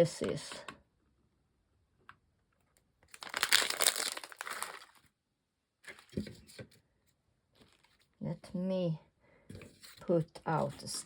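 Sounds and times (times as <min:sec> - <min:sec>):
plastic packaging crinkling: 0:03.1 - 0:05.1.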